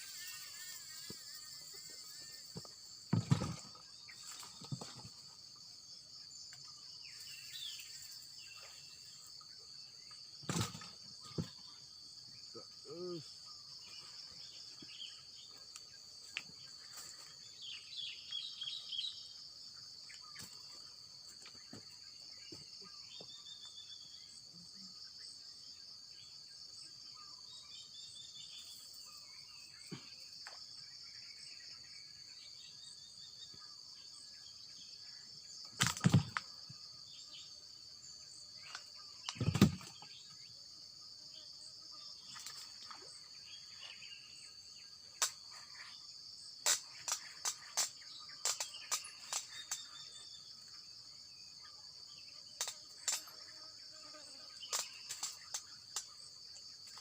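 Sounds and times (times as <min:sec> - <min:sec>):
insect chorus: 0:00.0 - 0:57.0
bird chirps: 0:42.3 - 0:50.8.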